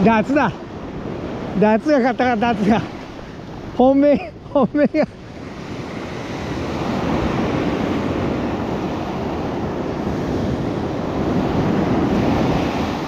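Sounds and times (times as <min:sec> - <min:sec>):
waves breaking on a beach: 0:00.0 - 0:13.0
wind on microphone: 0:05.1 - 0:13.0.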